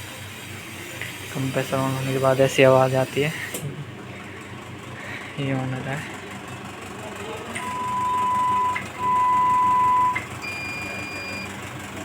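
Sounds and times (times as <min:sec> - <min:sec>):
air compressor running: 0:00.0 - 0:12.0
ventilator power-up beeps: 0:07.6 - 0:11.6.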